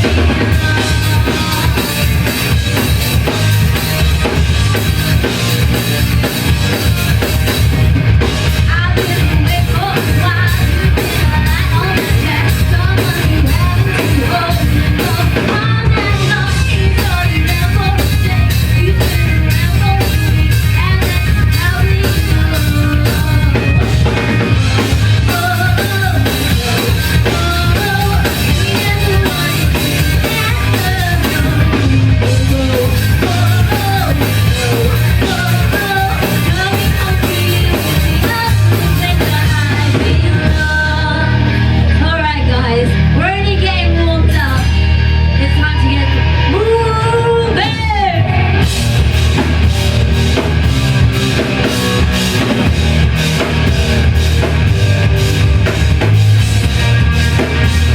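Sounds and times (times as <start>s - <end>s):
person singing: 0.0s - 2.9s, 8.5s - 24.2s, 25.1s - 48.8s
drum kit beat: 0.0s - 45.4s, 46.1s - 57.9s
amplified bass and guitar: 0.0s - 57.9s.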